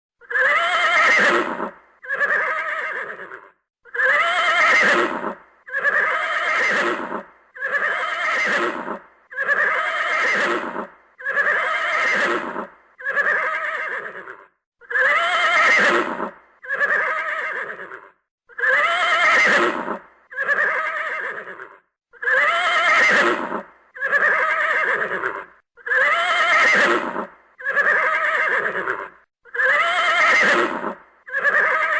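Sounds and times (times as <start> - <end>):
horse whinnying: 0.2 - 31.9.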